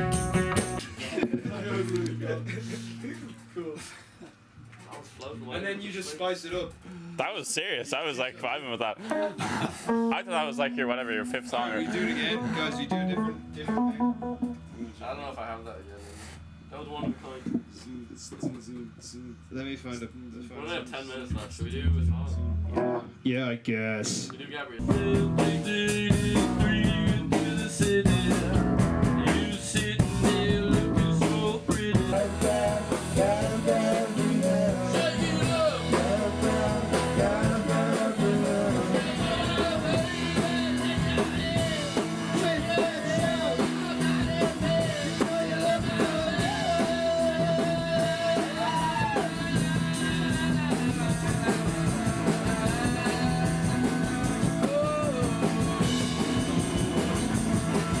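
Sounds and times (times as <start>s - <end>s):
live rock band playing: 0.0s - 1.0s, 9.9s - 10.3s, 11.5s - 14.7s, 24.8s - 58.0s
person singing: 24.8s - 56.3s.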